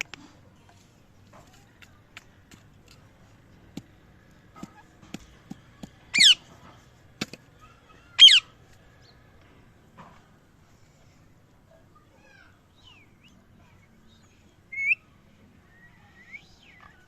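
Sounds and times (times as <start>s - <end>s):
parrot squawking: 6.1s - 6.4s, 8.1s - 8.5s.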